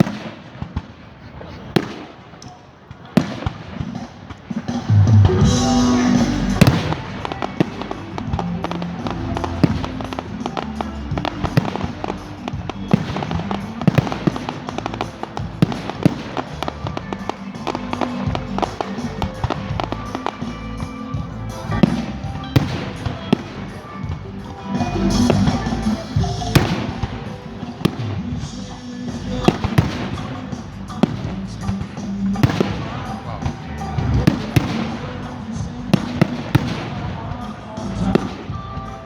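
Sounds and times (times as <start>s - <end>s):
fireworks bangs and crackles: 0.0s - 39.0s
music playing: 4.1s - 39.0s.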